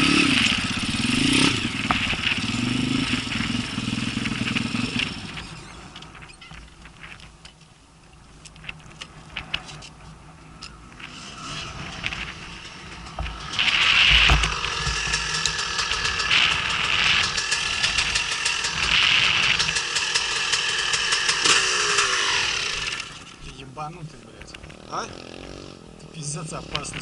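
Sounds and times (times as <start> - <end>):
dirt bike engine revving: 0.0 - 6.4, 10.9 - 23.4, 24.5 - 27.0.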